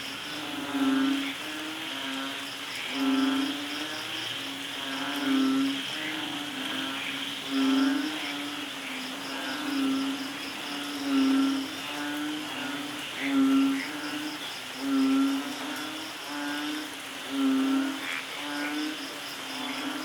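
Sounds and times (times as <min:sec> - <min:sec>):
steady rain hiss: 0:00.0 - 0:20.0.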